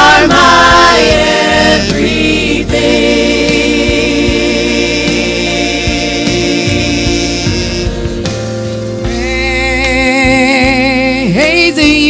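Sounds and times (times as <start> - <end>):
drum hits: 0.0 - 9.2
gospel group singing: 0.0 - 9.4
low instrumental accompaniment: 0.0 - 11.9.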